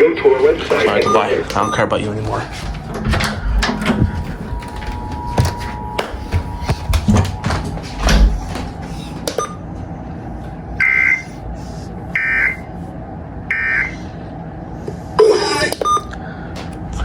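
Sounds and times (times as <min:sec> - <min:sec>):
short electronic beeps: 0:15.6 - 0:16.1.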